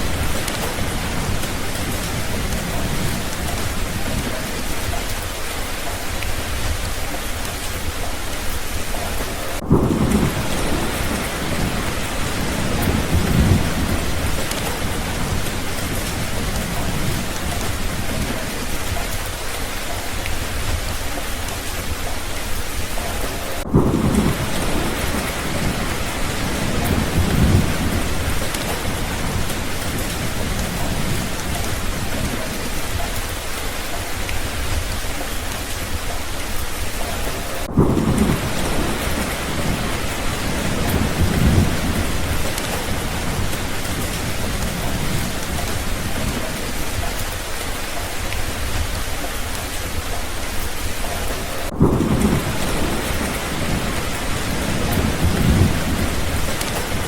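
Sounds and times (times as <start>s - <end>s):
steady rain: 0.0s - 57.0s
thunder rumbling: 0.0s - 57.0s.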